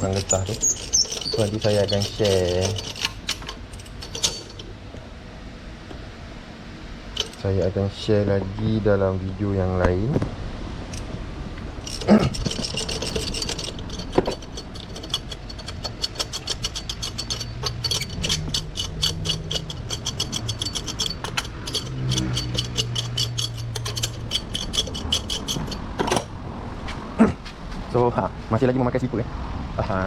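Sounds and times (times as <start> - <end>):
ratchet wrench clicking: 0.0 - 4.7, 7.2 - 7.4, 11.8 - 26.3.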